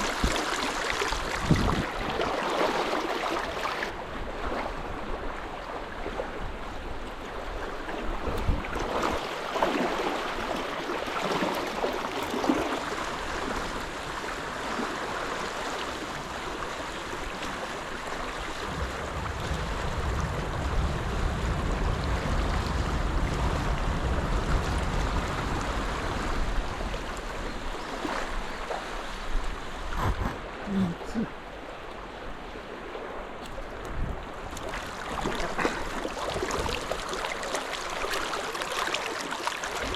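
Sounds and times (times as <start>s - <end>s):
river current rushing: 0.0s - 5.3s, 6.8s - 39.9s
low rumble: 18.7s - 26.3s.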